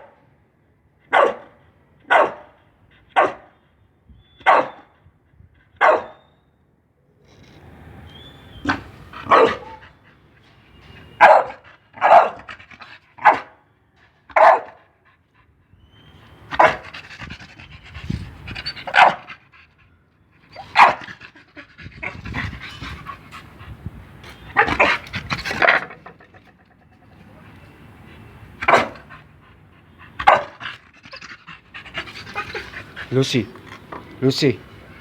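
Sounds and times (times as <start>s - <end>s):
dog barking: 1.1s - 2.5s, 3.2s - 3.5s, 4.4s - 4.9s, 5.8s - 6.2s, 8.6s - 9.8s, 11.2s - 12.5s, 13.2s - 13.5s, 14.3s - 14.8s, 16.6s - 16.8s, 18.9s - 19.3s, 20.7s - 21.0s, 28.6s - 29.1s, 30.2s - 30.6s
dog panting: 16.6s - 35.0s.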